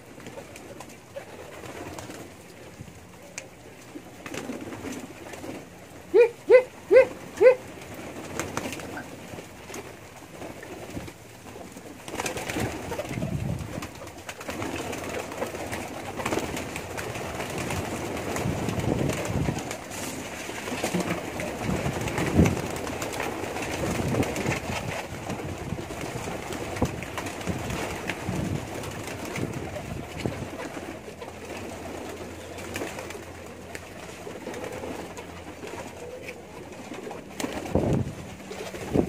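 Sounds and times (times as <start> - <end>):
pigeons cooing: 4.2 - 9.4, 29.1 - 37.7.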